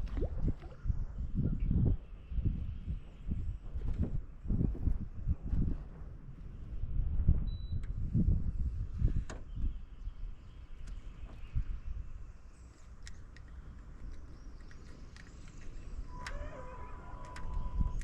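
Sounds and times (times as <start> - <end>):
wind buffeting microphone: 0.0 - 18.0
light clicks: 12.7 - 16.4.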